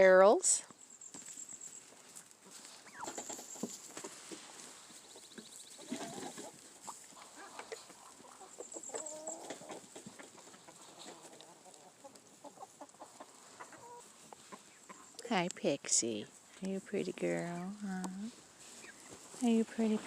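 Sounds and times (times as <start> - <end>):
chickens clucking: 2.5 - 15.4, 18.6 - 20.0.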